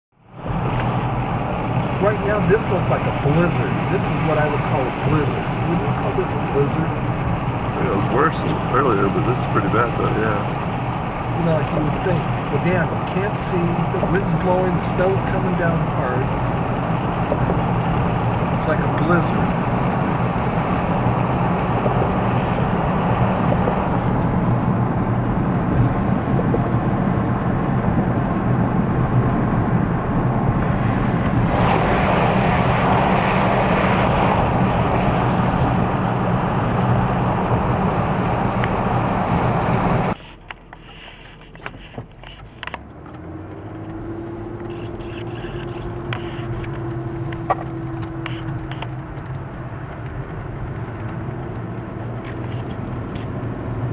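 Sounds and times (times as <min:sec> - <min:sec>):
vehicle engine hum: 0:00.1 - 0:53.9
storm wind rushing: 0:19.3 - 0:40.2.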